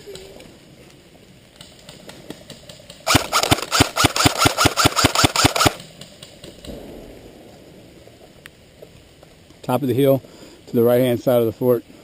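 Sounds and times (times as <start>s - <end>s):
airsoft gun firing rapidly: 3.1s - 5.8s.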